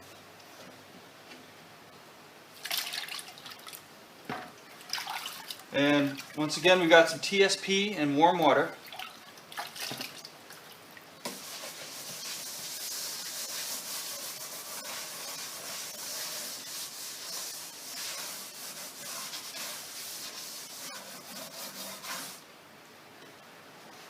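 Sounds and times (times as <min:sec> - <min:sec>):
wet scrubbing on wood: 0:11.2 - 0:22.4.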